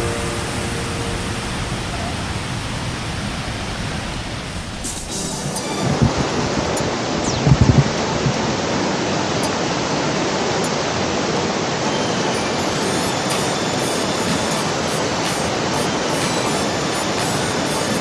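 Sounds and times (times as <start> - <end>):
waterfall rushing: 0.0 - 18.0
low thumps: 5.8 - 8.7.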